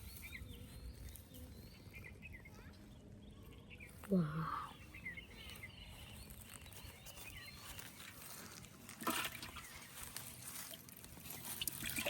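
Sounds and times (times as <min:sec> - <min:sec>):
water trickling and splashing: 0:07.8 - 0:12.0.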